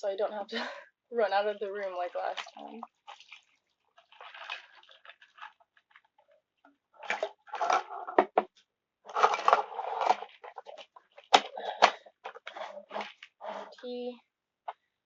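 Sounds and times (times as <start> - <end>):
rustling and scraping objects: 7.0 - 13.9.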